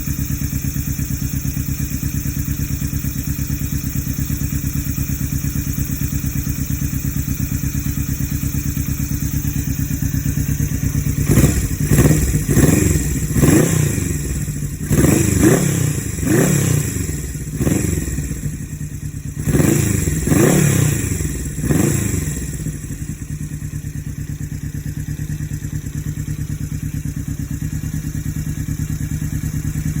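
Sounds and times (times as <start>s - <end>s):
motorcycle engine idling: 0.0s - 30.0s
motorcycle throttle blips: 8.5s - 30.0s.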